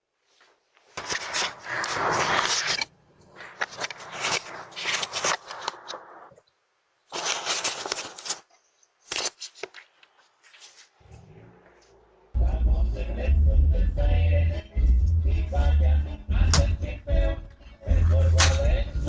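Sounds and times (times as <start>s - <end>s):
rustling and scuffing: 9.1s - 11.1s.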